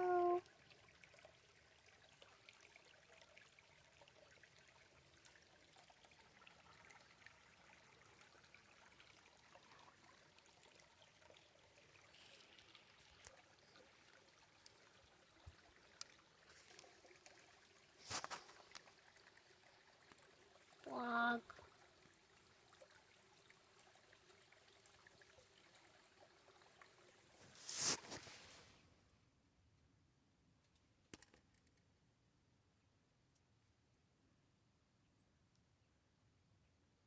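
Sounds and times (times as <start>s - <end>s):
faint flowing water: 0.0s - 29.5s
small ticks and clicks: 15.5s - 17.4s, 30.6s - 31.9s.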